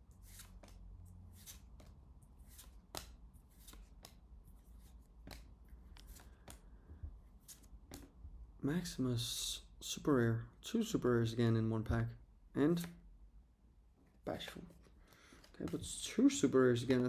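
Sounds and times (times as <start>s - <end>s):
cards flicking and rustling: 0.1s - 6.8s, 7.4s - 8.2s, 14.6s - 16.0s.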